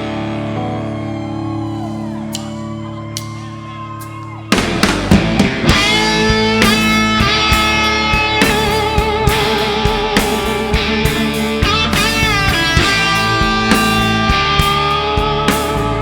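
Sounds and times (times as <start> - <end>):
rock band playing: 0.0 - 16.0
electric guitar chord ringing: 5.2 - 16.0.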